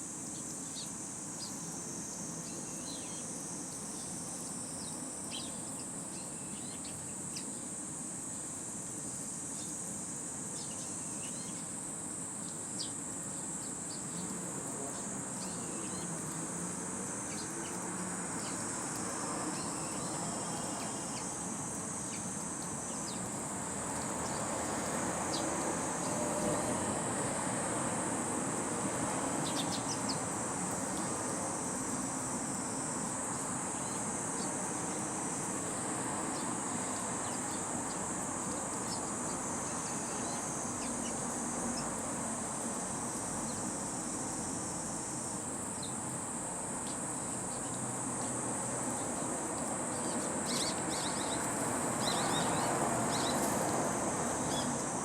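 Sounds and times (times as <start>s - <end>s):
high insect drone: 0.0s - 55.0s
sparrows chirping: 2.4s - 3.4s, 4.0s - 7.6s, 10.6s - 11.7s, 15.0s - 16.3s, 17.2s - 17.8s, 18.4s - 24.5s, 25.3s - 26.2s, 29.4s - 31.1s, 36.3s - 41.2s, 49.9s - 53.6s, 54.3s - 54.8s.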